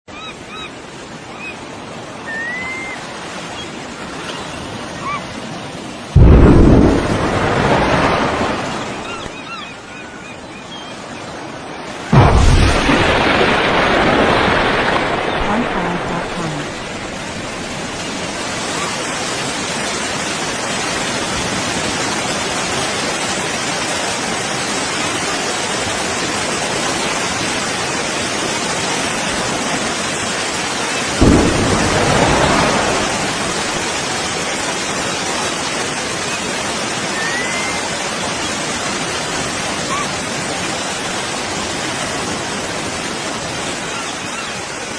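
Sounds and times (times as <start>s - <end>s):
explosion boom: 6.2s - 9.1s, 12.1s - 16.9s, 31.2s - 34.0s.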